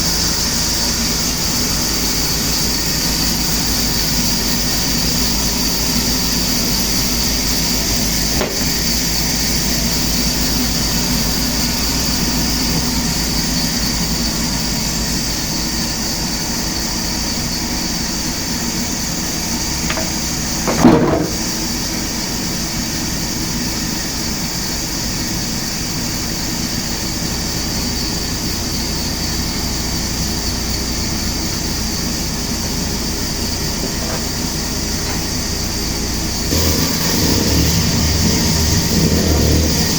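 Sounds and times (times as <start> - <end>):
heavy machinery running: 0.0 - 22.2, 28.1 - 39.9
loud sudden clatter: 7.6 - 13.2, 19.6 - 21.9, 33.7 - 39.9.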